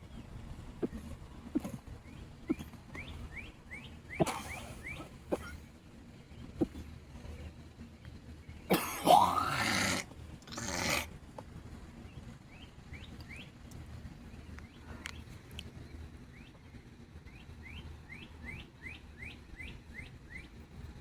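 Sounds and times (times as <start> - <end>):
small birds chirping: 0.0 - 11.1, 11.7 - 20.9
woman coughing: 4.2 - 4.7, 5.3 - 5.6, 8.7 - 9.5.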